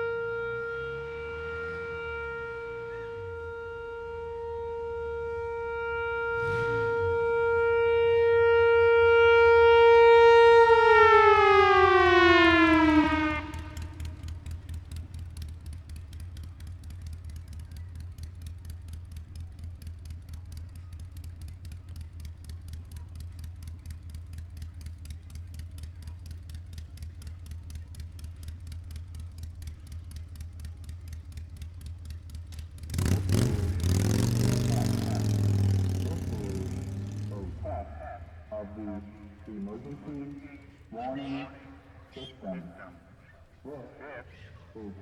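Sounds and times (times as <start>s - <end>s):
loudspeaker test voice message: 34.5s - 45.0s.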